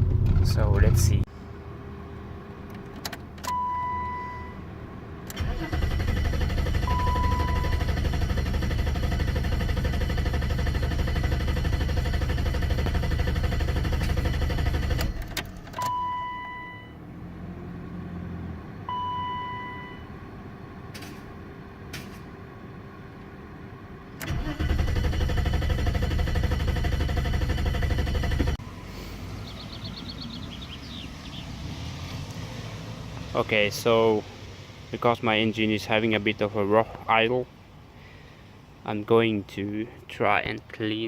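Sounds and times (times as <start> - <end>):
car engine running: 0.0 - 1.3, 5.4 - 15.4, 24.3 - 31.5.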